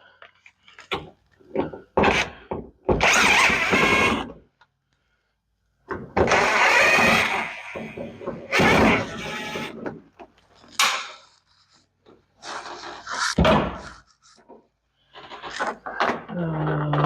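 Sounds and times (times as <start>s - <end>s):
power drill running in bursts: 3.0s - 4.2s, 6.3s - 9.7s.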